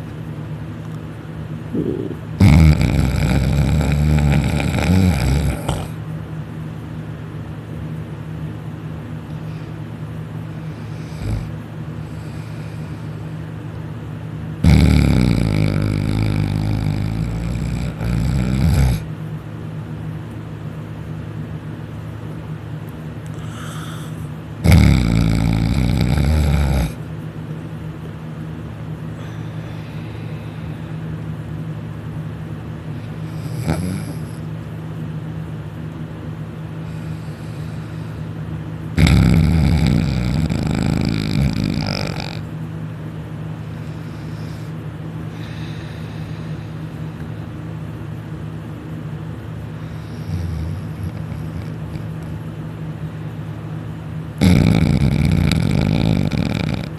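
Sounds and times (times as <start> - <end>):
steady low hum: 0.0 - 56.9
man snoring loudly: 1.7 - 6.0, 10.6 - 13.1, 14.6 - 19.1, 23.3 - 27.0, 33.1 - 34.4, 38.9 - 42.5, 49.8 - 52.3, 54.4 - 56.9
quiet breaths: 9.3 - 13.8, 23.2 - 24.4, 29.0 - 31.5, 36.7 - 38.7, 43.5 - 47.7, 49.6 - 52.7.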